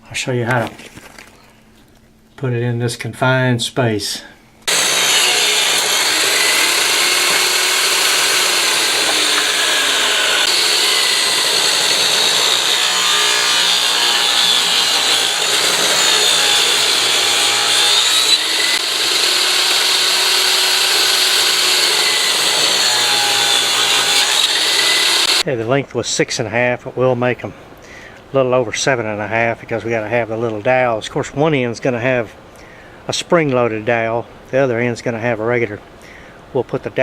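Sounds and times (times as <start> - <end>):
power tool cutting wood: 4.7 - 25.5.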